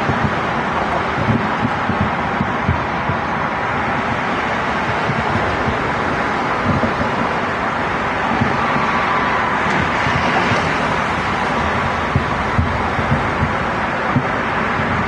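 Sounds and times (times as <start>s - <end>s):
city traffic: 0.0s - 15.0s
wind: 0.0s - 15.0s
distant firework booms: 11.3s - 15.0s.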